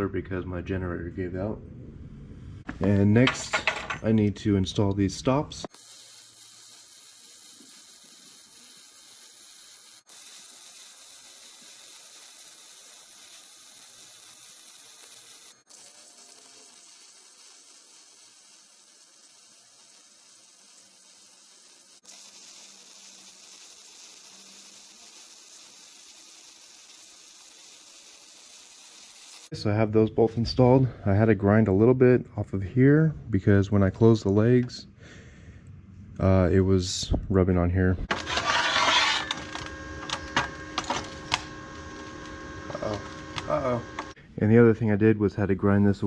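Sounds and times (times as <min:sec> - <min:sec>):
welding arc sizzling: 0:04.7 - 0:29.6, 0:38.1 - 0:44.2.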